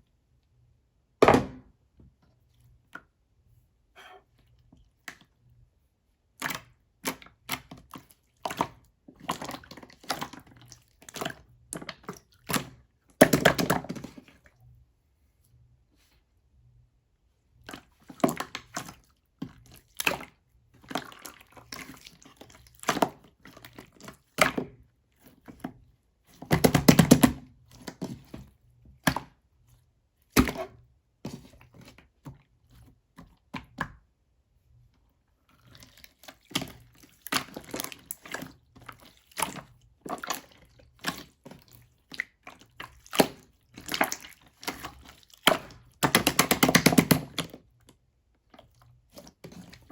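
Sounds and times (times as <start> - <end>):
slime squelching with wet pops: 35.5 - 49.9.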